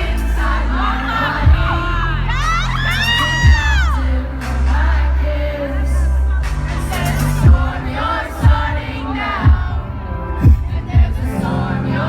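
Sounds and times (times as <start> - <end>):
deep bass synth: 0.0 - 12.0
heavy kick drum: 1.5 - 1.8, 3.4 - 4.0, 7.4 - 11.4.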